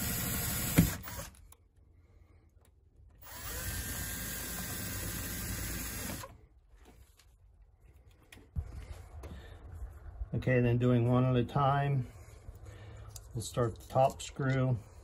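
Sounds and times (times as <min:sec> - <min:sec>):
power drill whining: 0:00.0 - 0:01.6, 0:03.2 - 0:06.4.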